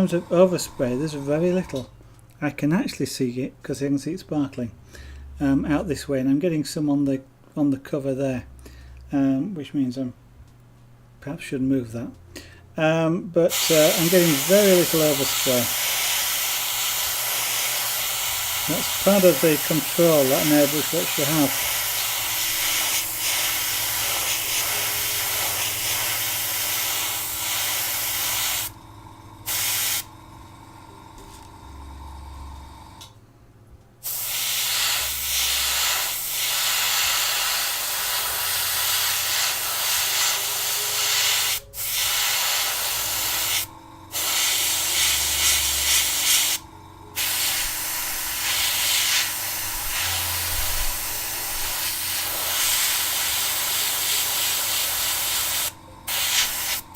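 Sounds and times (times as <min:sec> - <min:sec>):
airbrush hissing: 0:13.5 - 0:28.8, 0:29.4 - 0:30.1, 0:34.0 - 0:56.9.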